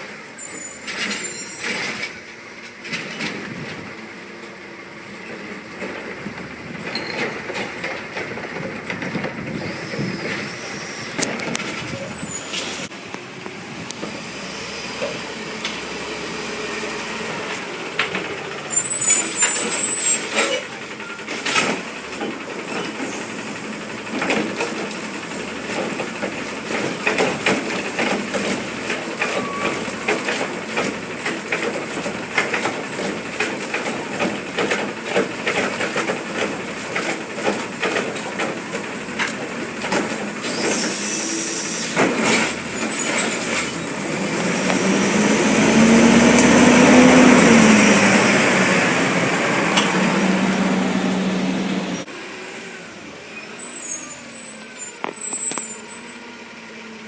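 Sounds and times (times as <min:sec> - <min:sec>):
diesel engine running and revving: 0:01.2 - 0:57.0
clatter of knocks and rattles: 0:05.3 - 0:09.6, 0:24.0 - 0:40.4
air hiss: 0:40.4 - 0:42.0.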